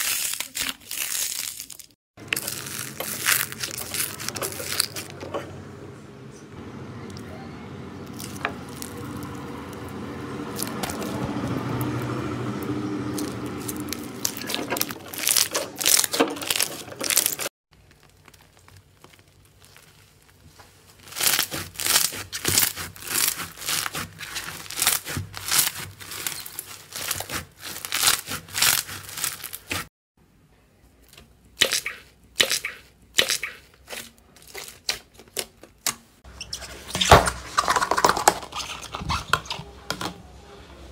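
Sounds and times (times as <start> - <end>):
slime crackling: 0.0 - 5.2, 8.0 - 9.9, 13.1 - 29.9.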